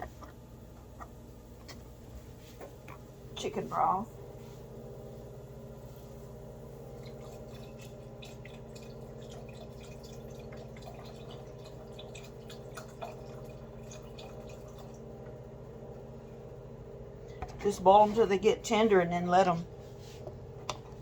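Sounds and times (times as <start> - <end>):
steady low hum: 0.0 - 21.0
broth dripping in a saucepan: 6.8 - 15.5.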